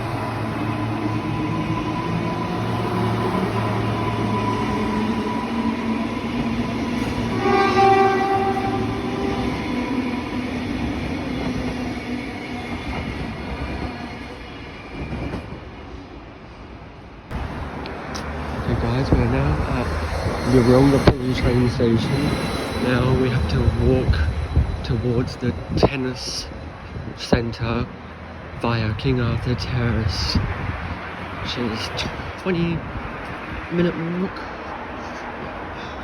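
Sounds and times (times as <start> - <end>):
electric train whine: 0.0 - 27.2
train horn blast: 7.0 - 9.7.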